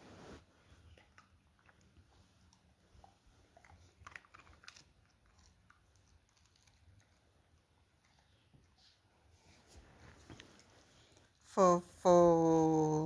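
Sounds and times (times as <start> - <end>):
dog chewing meat: 3.4 - 7.6.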